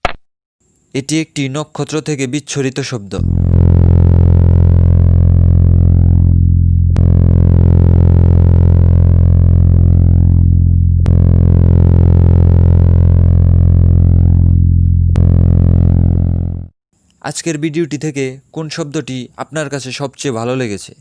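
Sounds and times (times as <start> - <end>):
deep hum with overtones: 3.1 - 16.8.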